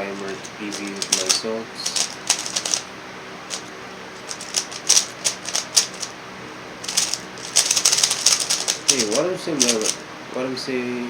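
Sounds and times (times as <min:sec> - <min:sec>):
speed cube plastic clicks: 0:00.2 - 0:02.8, 0:04.3 - 0:06.1, 0:06.9 - 0:10.0.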